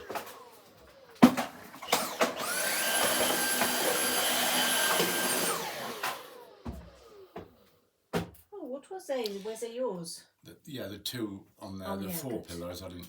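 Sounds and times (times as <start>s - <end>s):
stick vacuum motor whine: 0.0s - 7.6s.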